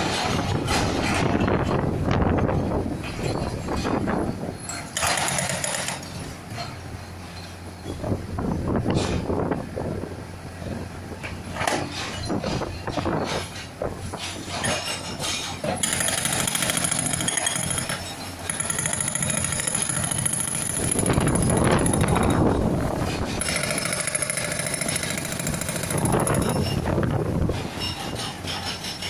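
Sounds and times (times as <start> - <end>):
loader engine running: 0.0 - 29.0
hydraulic rock breaker hammering: 3.0 - 6.8, 11.6 - 29.0.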